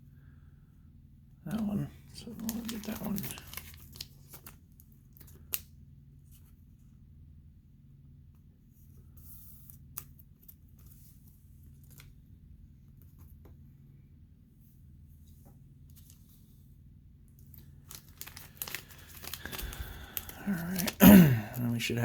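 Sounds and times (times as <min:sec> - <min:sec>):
low steady hum: 0:00.0 - 0:22.0
trading cards clicking and rustling: 0:17.4 - 0:22.0.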